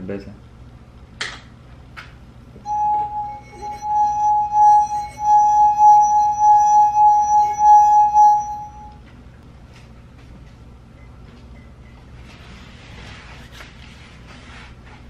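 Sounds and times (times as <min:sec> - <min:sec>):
singing wine glass tone: 0:02.7 - 0:09.0.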